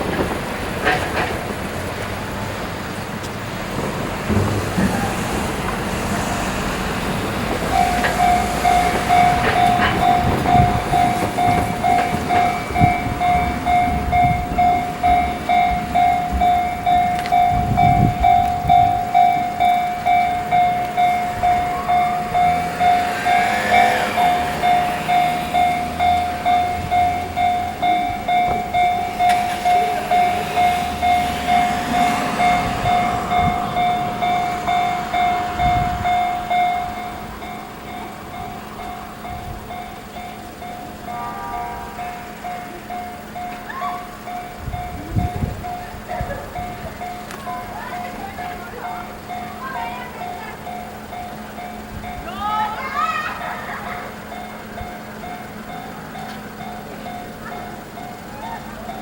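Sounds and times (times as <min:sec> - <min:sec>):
train rumbling on rails: 0:00.0 - 0:59.0
rising squeal: 0:04.7 - 0:45.5
level crossing alarm bell dinging: 0:07.0 - 0:59.0.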